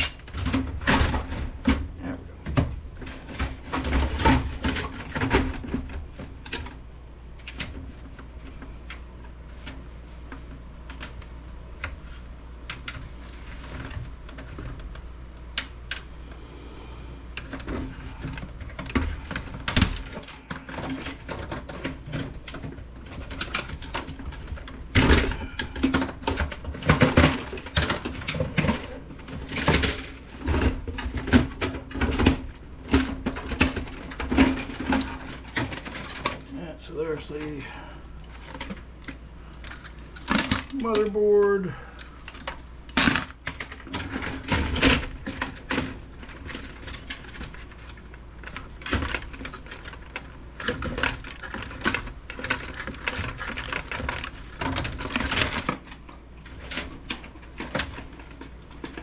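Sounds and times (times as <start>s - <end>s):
computer parts clattering: 0.0s - 9.8s, 17.4s - 59.0s
steady low hum: 0.0s - 59.0s.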